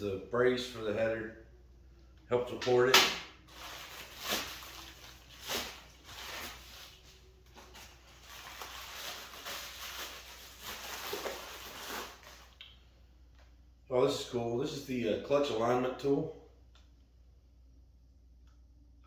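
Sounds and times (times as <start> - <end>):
packing material rustling: 3.4 - 12.6.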